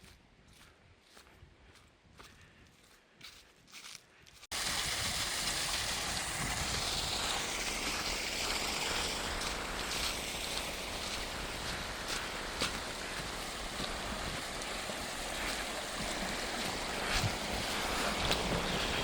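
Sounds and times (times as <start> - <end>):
faint footsteps on a trail: 0.0 - 4.6, 6.1 - 19.0
mountain stream rushing: 4.5 - 19.0.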